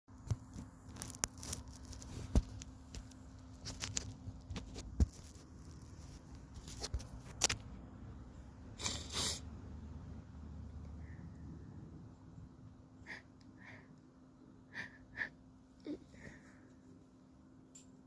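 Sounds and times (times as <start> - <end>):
crackles and rustles: 0.1 - 7.8
faint steady hum: 0.1 - 18.0.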